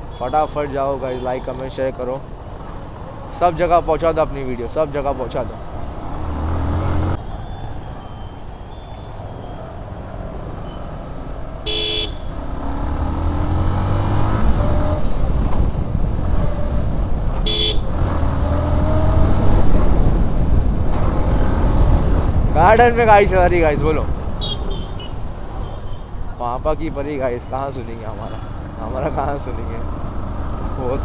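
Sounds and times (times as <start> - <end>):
motorcycle engine accelerating: 5.6 - 7.2, 12.2 - 24.4
vehicle horn toots: 11.6 - 12.5, 17.4 - 18.0, 24.3 - 26.1
wind rumble: 12.3 - 25.7.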